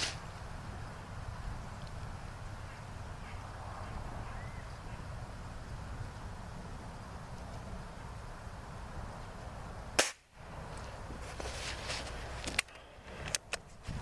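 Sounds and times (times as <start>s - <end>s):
air rifle shot crack: 10.0s - 10.3s.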